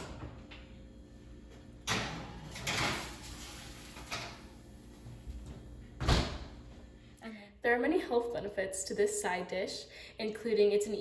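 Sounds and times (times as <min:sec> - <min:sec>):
oven door opening: 0:01.8 - 0:04.6
baking pan scraping on oven rack: 0:02.2 - 0:04.4.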